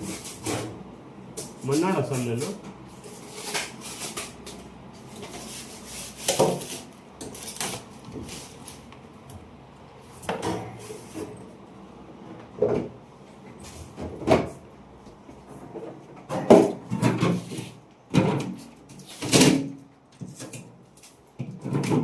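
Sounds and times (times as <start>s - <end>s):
knocks and scrapes of handling: 0.0s - 9.0s.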